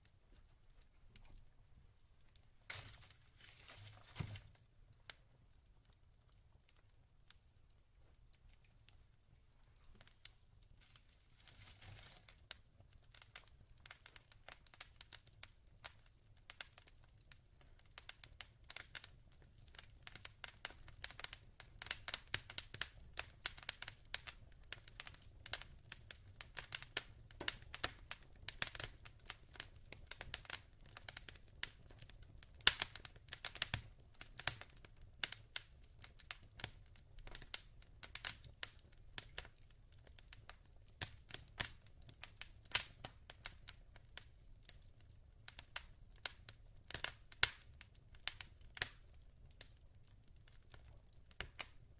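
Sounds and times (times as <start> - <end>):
wood fire crackling: 0.0 - 51.9.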